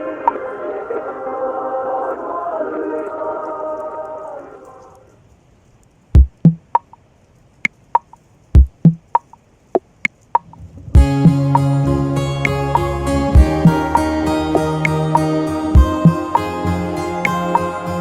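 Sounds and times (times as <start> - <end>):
kick drum thumps: 6.2 - 6.7, 8.6 - 9.2, 10.4 - 11.4
wood block clicks: 6.2 - 7.0, 7.6 - 10.6
music with bass and melody: 10.5 - 18.0.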